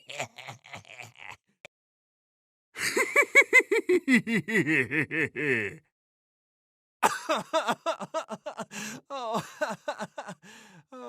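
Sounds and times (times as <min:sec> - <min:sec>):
person laughing: 0:00.0 - 0:01.4, 0:02.8 - 0:05.8, 0:07.0 - 0:11.0.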